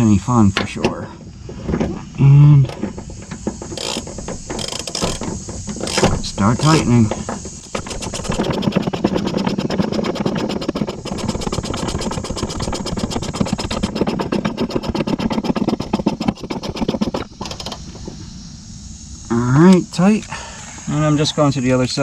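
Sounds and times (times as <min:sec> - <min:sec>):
power wrench rattling: 0:02.7 - 0:17.9.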